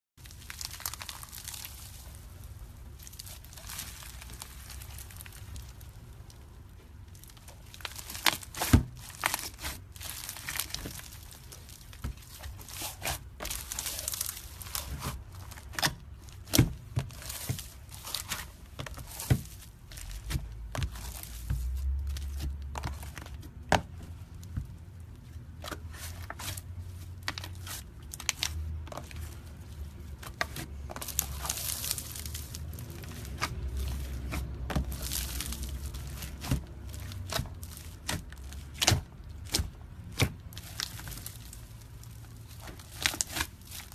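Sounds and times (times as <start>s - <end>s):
slime squeezed by hand crackling: 0.2s - 23.7s.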